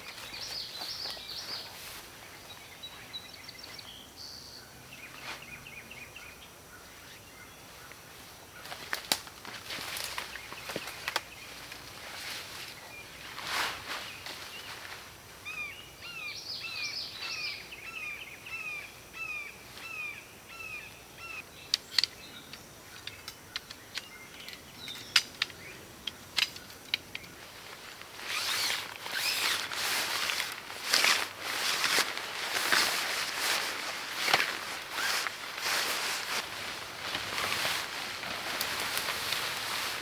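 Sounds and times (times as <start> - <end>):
songbird calling: 0.0 - 8.8, 10.1 - 13.4, 14.0 - 40.0
rustling and handling noises: 8.6 - 15.1, 23.0 - 40.0
sharp clicks: 21.7 - 27.4.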